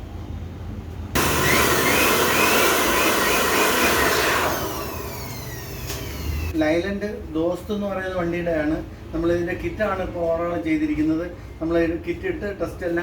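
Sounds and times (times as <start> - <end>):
rush of air: 1.2 - 5.8
turbo whine falling in pitch: 1.2 - 6.6.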